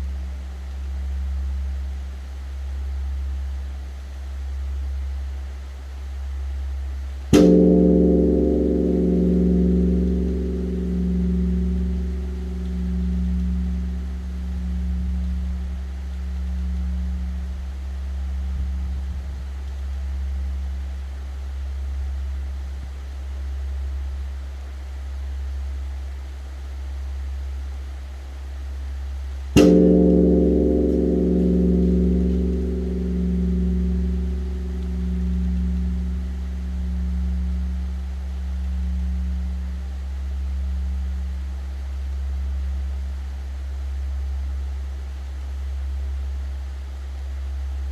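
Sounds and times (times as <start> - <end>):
large bronze bell struck: 7.3 - 20.9, 29.6 - 44.2
deep bell hum: 7.3 - 22.3, 29.6 - 47.9.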